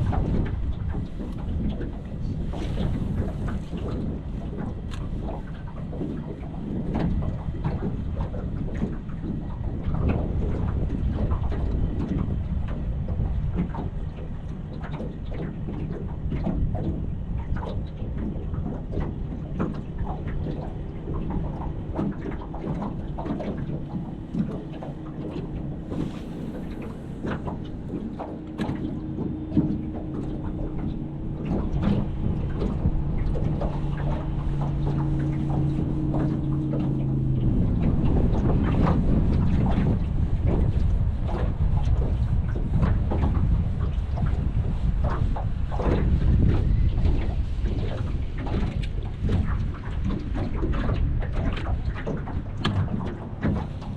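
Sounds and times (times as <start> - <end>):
water slapping boat hull: 0.0 - 53.9
wind buffeting microphone: 0.0 - 53.9
motor hum: 18.2 - 53.9.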